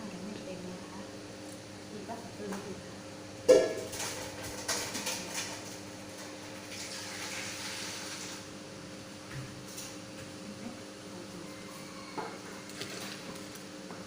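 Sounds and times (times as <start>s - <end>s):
water pouring into bucket: 6.6s - 8.4s.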